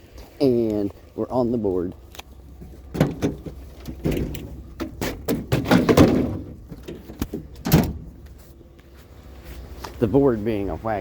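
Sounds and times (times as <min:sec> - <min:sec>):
vehicle cabin rumble: 0:01.6 - 0:10.9
knocks and clunks: 0:02.6 - 0:08.4.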